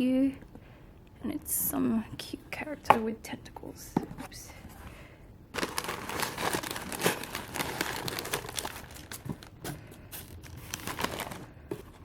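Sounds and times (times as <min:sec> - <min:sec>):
packaging rustling and crinkling: 0:05.5 - 0:12.0.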